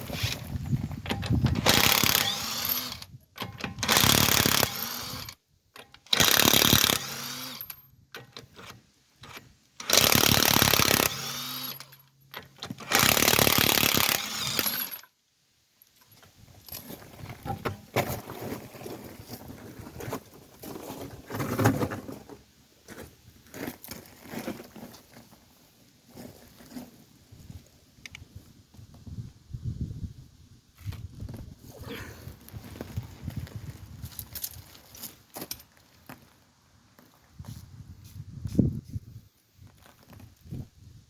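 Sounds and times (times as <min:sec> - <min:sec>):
impact wrench bursts: 0:01.5 - 0:05.4, 0:06.0 - 0:07.8, 0:09.8 - 0:15.1.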